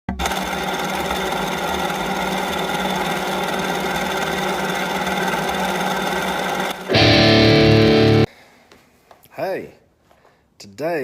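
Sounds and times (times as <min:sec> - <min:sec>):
small motor running: 0:00.1 - 0:06.9.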